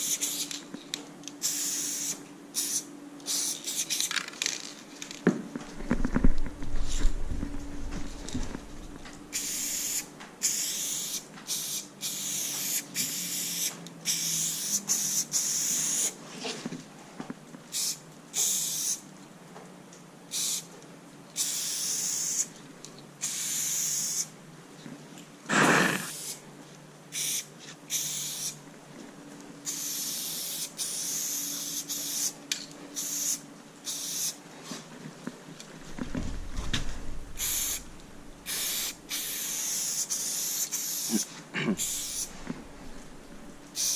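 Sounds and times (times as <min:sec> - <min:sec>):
spray paint can hissing: 0:00.0 - 0:00.6, 0:01.4 - 0:04.2, 0:09.3 - 0:16.2, 0:17.7 - 0:19.0, 0:20.3 - 0:20.7, 0:21.4 - 0:22.5, 0:23.2 - 0:24.3, 0:25.5 - 0:26.4, 0:27.1 - 0:28.6, 0:29.6 - 0:32.4, 0:33.0 - 0:34.4, 0:37.4 - 0:37.8, 0:38.4 - 0:42.4.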